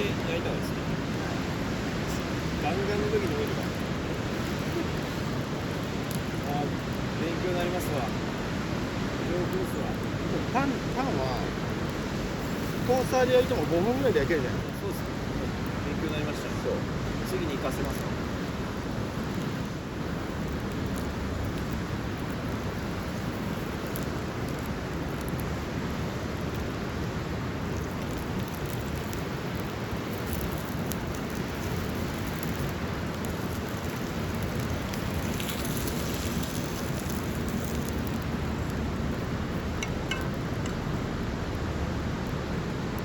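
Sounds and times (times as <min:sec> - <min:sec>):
faint crackles: 0:00.0 - 0:43.0
water rushing: 0:32.6 - 0:43.0.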